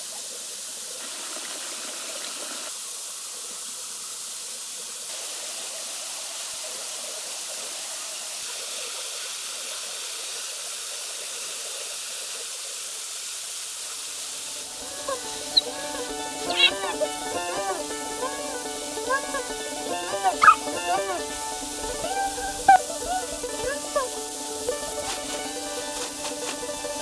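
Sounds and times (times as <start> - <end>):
waterfall rushing: 14.1 - 27.0.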